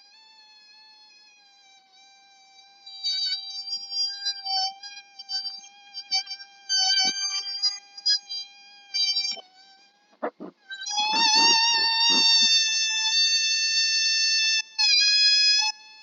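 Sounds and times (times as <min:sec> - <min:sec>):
balloon deflating squeal: 0:10.2 - 0:13.1.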